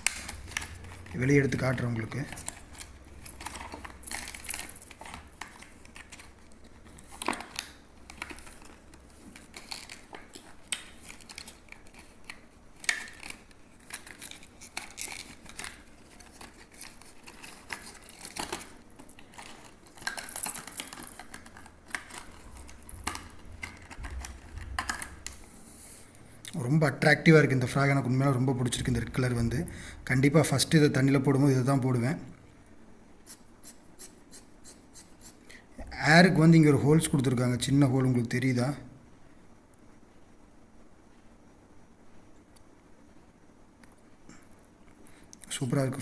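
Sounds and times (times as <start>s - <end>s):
plastic packaging crinkling: 0.0s - 25.4s.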